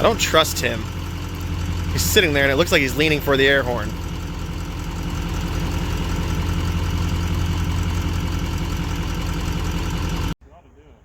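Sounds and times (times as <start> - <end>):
truck engine idling: 0.0 - 10.4.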